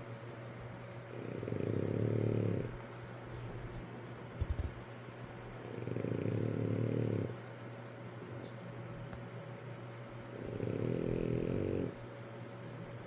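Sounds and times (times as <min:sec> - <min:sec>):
person snoring: 0:01.1 - 0:02.8, 0:05.7 - 0:07.3, 0:10.4 - 0:12.0.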